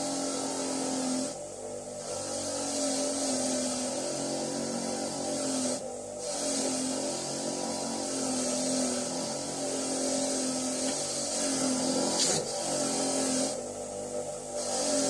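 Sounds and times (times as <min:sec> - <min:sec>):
wire wheel scrubbing metal: 0:02.0 - 0:13.6, 0:14.6 - 0:15.0.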